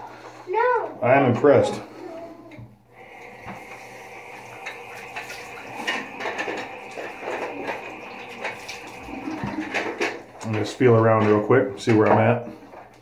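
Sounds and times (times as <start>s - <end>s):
water running: 0.0s - 13.0s
low hum: 2.9s - 10.4s.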